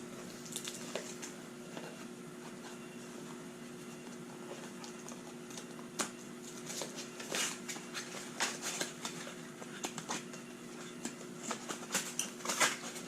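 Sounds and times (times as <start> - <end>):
steady low hum: 0.0 - 13.0
box and packaging being opened: 4.0 - 13.0.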